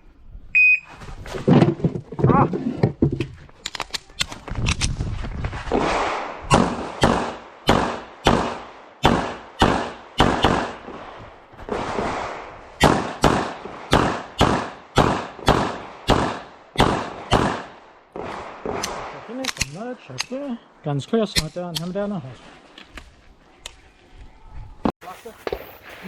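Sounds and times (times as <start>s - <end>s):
rapid pistol shots with echo: 5.8s - 11.0s, 11.7s - 19.4s.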